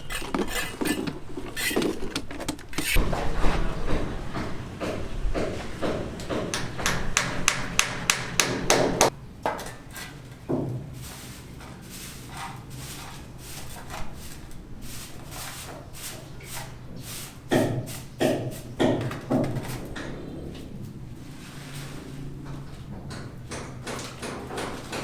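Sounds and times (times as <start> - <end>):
sharp knocks: 2.7 - 9.2.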